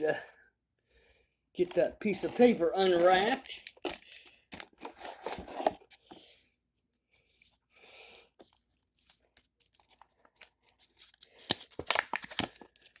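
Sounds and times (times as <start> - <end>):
paper rustling and crinkling: 1.6 - 6.1, 8.4 - 13.0.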